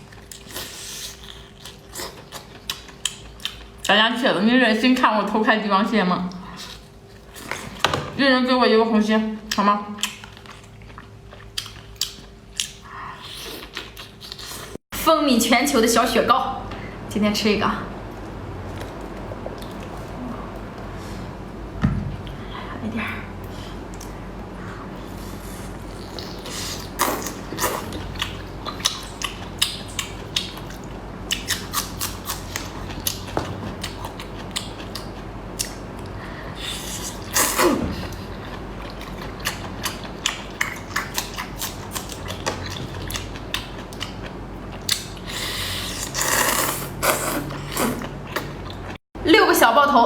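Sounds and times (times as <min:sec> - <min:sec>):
mouth clicks and chewing: 0:09.5 - 0:14.8, 0:25.9 - 0:36.2, 0:36.9 - 0:49.0
slurping or crunching: 0:25.1 - 0:28.1, 0:44.8 - 0:48.5.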